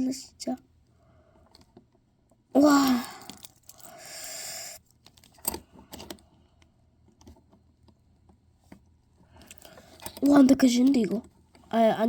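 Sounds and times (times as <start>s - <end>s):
soft breathy hiss: 2.6s - 4.8s.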